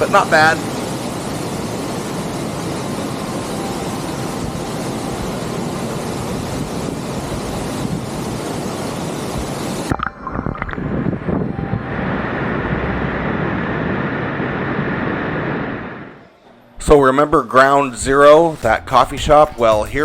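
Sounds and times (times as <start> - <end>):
waterfall rushing: 0.0 - 11.6.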